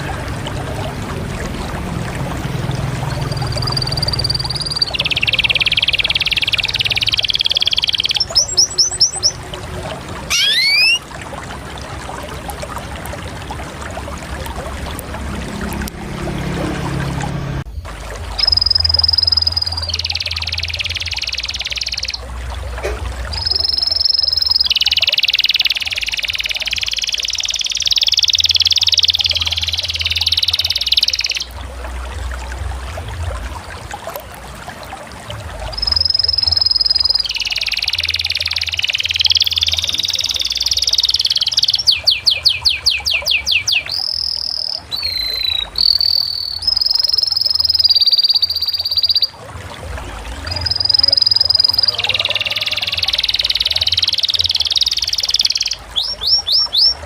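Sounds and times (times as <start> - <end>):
canary singing trills: 3.1 - 9.6, 10.3 - 11.0, 18.4 - 22.2, 23.3 - 31.5, 35.7 - 49.4, 50.5 - 57.0.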